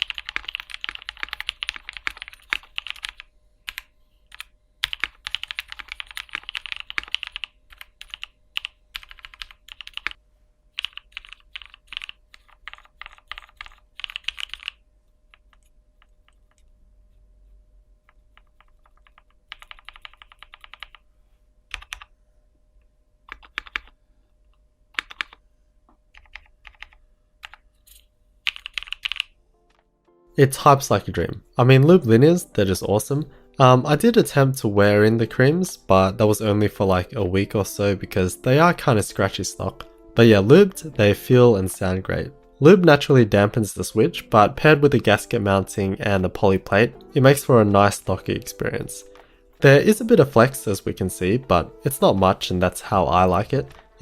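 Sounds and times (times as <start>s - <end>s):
mechanical keyboard typing: 0.0s - 10.2s, 10.8s - 16.6s, 18.0s - 21.0s, 21.7s - 22.1s, 23.2s - 24.0s, 24.9s - 25.4s, 26.2s - 27.6s, 28.4s - 29.8s.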